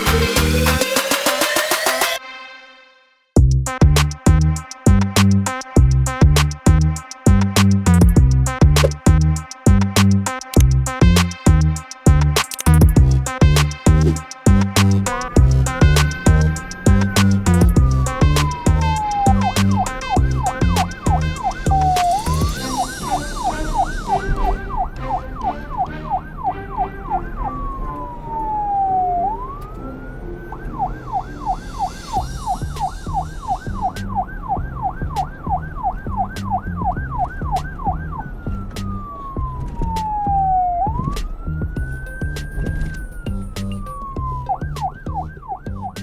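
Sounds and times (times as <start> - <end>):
police siren yelping and wailing: 0.0 - 2.2, 12.8 - 46.0
low repeating beat: 3.4 - 26.6, 32.1 - 46.0.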